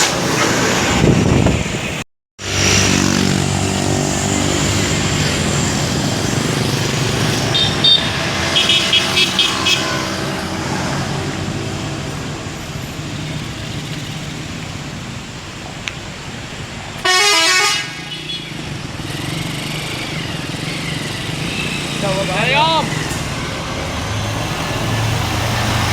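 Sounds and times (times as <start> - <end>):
bus engines running: 0.0 - 25.9
loud horn blast: 7.4 - 10.2, 17.0 - 18.5.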